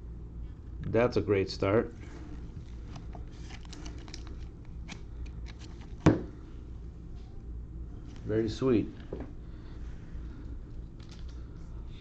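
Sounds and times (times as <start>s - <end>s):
trading cards rustling: 2.3s - 6.1s.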